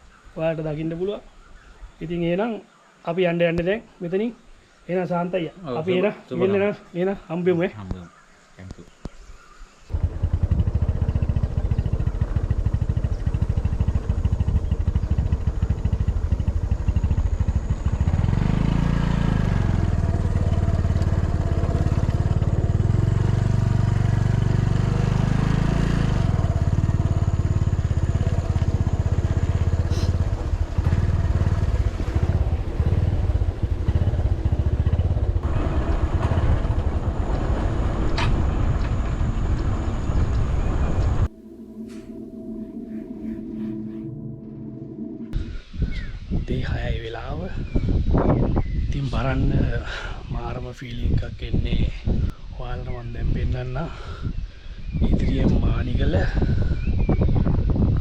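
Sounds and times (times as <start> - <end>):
vehicle engine running: 9.9 - 45.5
road and wind noise: 9.9 - 58.0.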